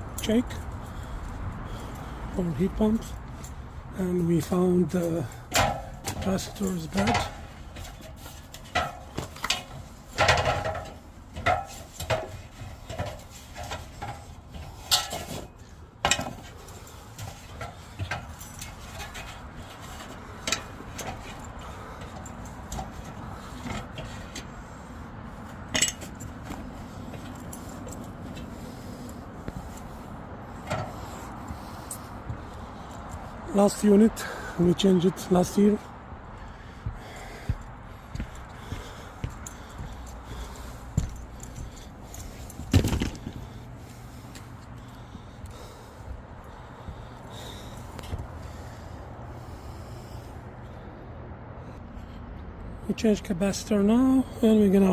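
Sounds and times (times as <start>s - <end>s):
metal tools clinking: 1.7s - 24.5s, 25.6s - 30.0s, 38.8s - 44.1s.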